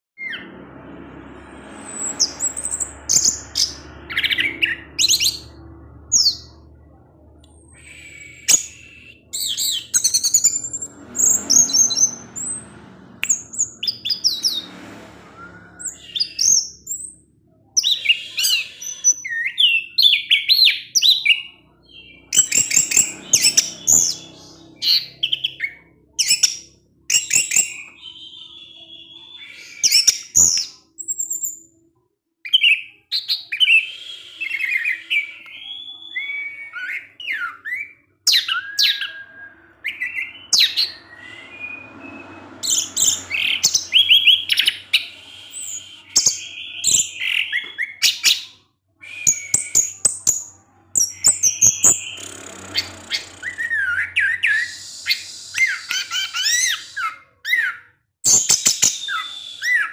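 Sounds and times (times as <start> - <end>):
bird singing chirps and trills: 0.2 - 31.8, 34.4 - 59.9.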